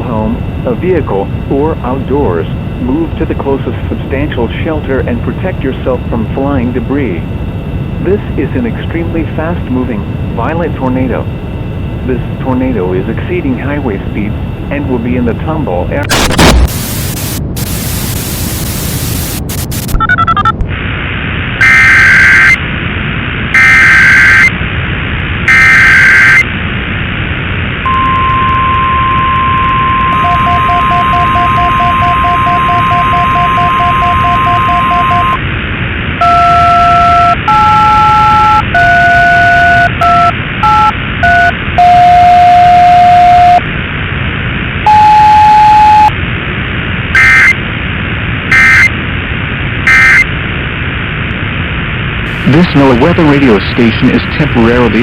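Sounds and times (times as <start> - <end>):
heavy radio static: 0.0 - 7.3, 8.0 - 20.0, 30.1 - 35.4, 41.8 - 43.7, 47.2 - 47.6, 48.5 - 49.0, 49.8 - 50.3, 52.2 - 55.0
weather radio alarm tone: 0.0 - 20.5, 21.6 - 22.6, 23.6 - 24.6, 25.5 - 26.5, 27.8 - 35.4, 36.2 - 43.7, 44.8 - 46.2, 47.1 - 47.6, 48.5 - 49.0, 49.8 - 50.4, 52.2 - 55.0
digital header data bursts: 14.8 - 20.5, 48.5 - 48.9, 49.9 - 50.3, 52.3 - 55.0
loud burst of noise: 16.0 - 55.0
touch-tone dialing beeps: 19.9 - 20.5, 27.9 - 35.4, 36.2 - 43.6.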